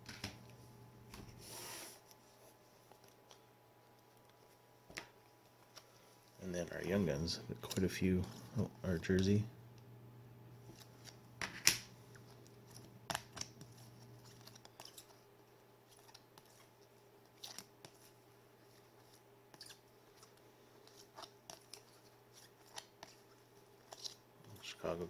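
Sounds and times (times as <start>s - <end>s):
cards clicking and sliding: 10.7s - 15.2s, 17.3s - 18.2s, 19.0s - 25.0s.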